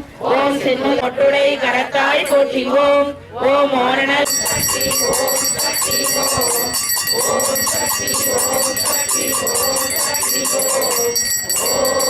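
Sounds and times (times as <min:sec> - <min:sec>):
group of voices chanting: 0:00.0 - 0:12.0
bell rung rapidly: 0:04.3 - 0:12.0.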